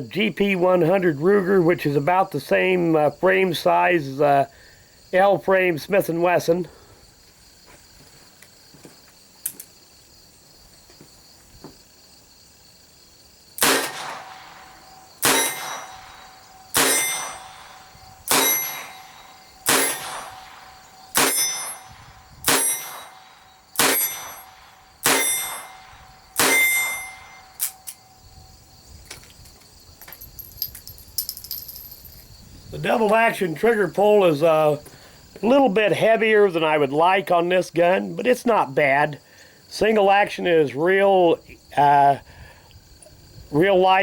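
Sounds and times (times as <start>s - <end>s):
crickets chirping: 0.0s - 44.0s
revolver shots ringing: 13.6s - 17.6s, 18.3s - 21.9s, 26.4s - 27.8s.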